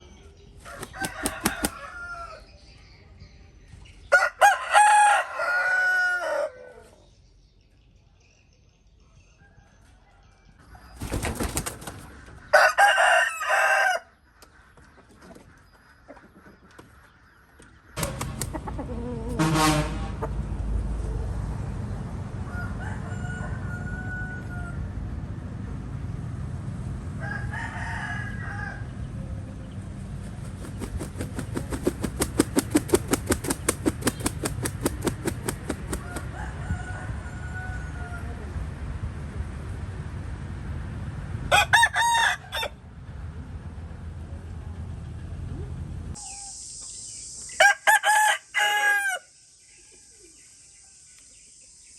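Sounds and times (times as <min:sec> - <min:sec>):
rooster crowing: 0:00.6 - 0:02.5, 0:04.1 - 0:07.0, 0:12.5 - 0:14.1, 0:22.4 - 0:25.0, 0:27.2 - 0:29.0, 0:32.6 - 0:38.5, 0:41.5 - 0:42.8, 0:47.6 - 0:49.3
fast regular pulses: 0:30.3 - 0:36.2.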